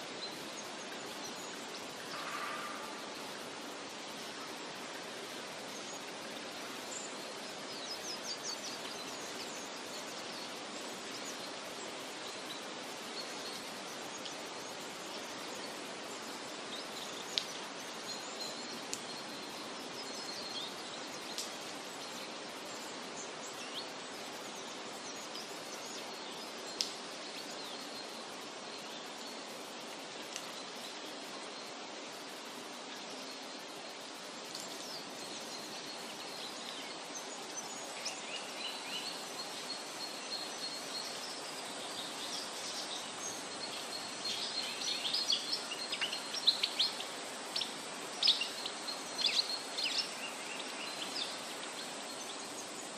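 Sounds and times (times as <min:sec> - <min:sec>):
steady rushing hiss: 0:00.0 - 0:52.9.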